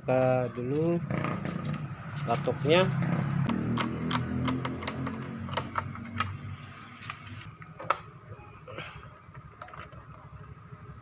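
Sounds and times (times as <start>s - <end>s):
tools and plastic parts clicking: 3.5s - 6.4s, 9.6s - 10.1s.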